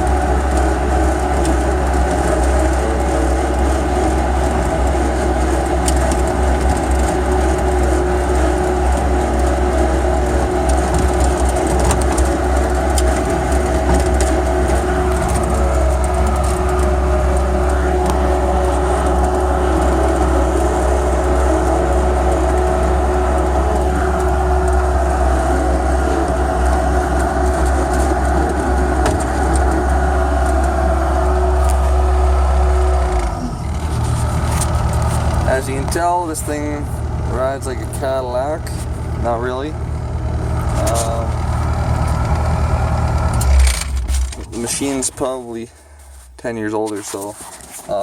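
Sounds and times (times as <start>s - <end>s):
diesel engine at high throttle: 0.0s - 48.0s.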